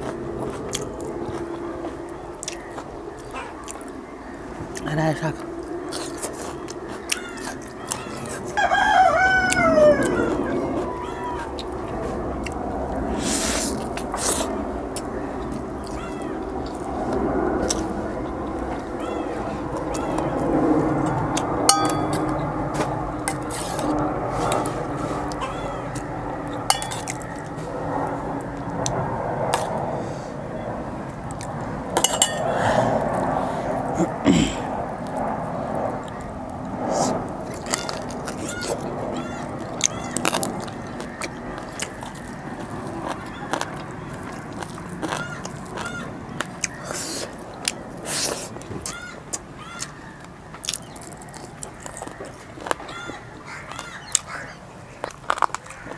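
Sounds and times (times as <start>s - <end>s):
person eating: 0.0s - 4.0s, 4.7s - 26.1s, 26.7s - 27.8s, 28.6s - 29.8s, 31.2s - 50.0s, 50.6s - 52.9s
rooster crowing: 7.1s - 12.4s, 23.4s - 27.4s
cutlery clinking on a plate: 21.7s - 23.9s, 26.7s - 27.2s, 32.0s - 32.5s.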